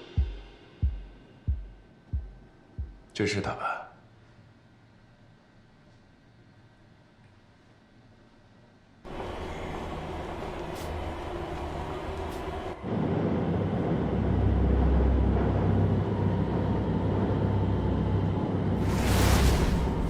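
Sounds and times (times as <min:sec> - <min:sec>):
subway train rumbling: 0:09.1 - 0:20.0.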